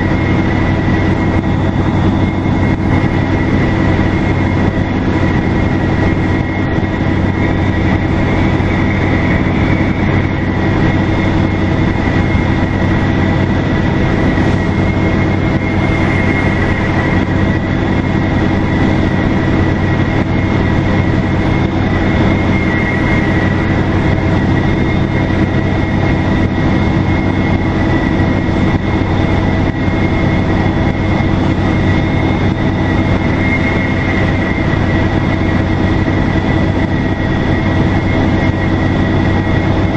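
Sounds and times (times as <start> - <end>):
bus diesel engine running: 0.0 - 39.9
high-pitched turbocharger whistle: 29.3 - 39.6.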